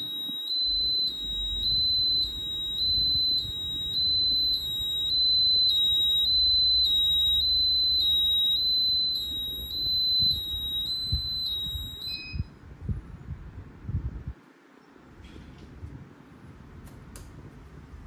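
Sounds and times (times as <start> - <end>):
fire alarm two-tone electronic tone: 0.0 - 12.5
short beep: 0.0 - 12.5.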